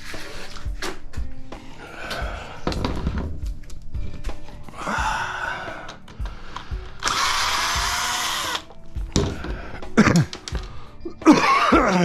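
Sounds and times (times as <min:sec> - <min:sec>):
cordless drill driving screw: 0:07.0 - 0:08.7.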